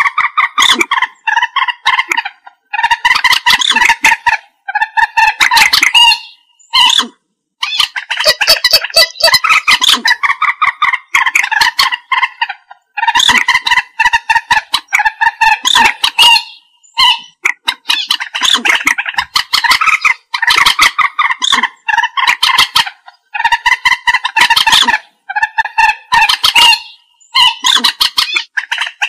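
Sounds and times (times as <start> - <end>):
moorhen calling: 0.0 - 29.0.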